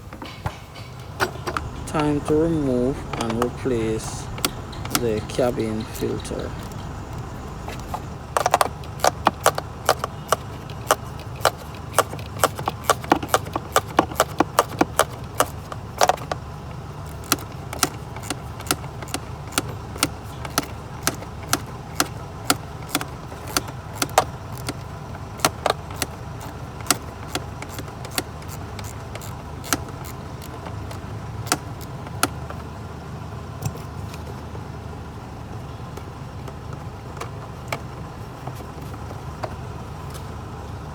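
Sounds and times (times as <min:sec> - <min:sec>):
steady low hum: 0:00.8 - 0:09.5.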